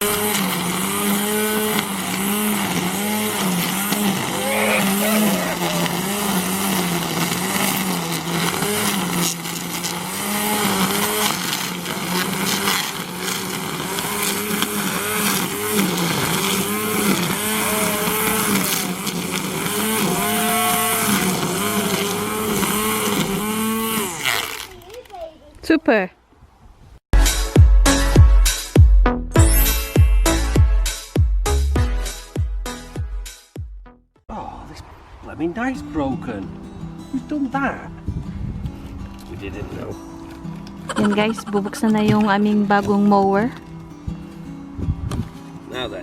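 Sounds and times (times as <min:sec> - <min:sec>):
engines revving: 0:00.0 - 0:24.6.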